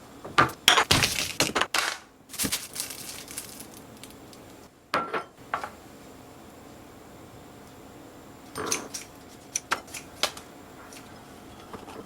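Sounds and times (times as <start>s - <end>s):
crinkling and crushing food: 0.9s - 4.6s.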